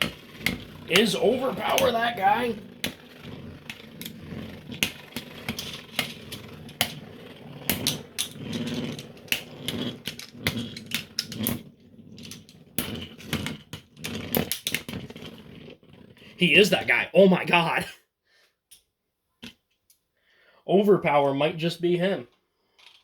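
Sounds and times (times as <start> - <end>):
spinning tops clacking: 0.0 - 15.3
spinning tops whirring: 0.0 - 17.6.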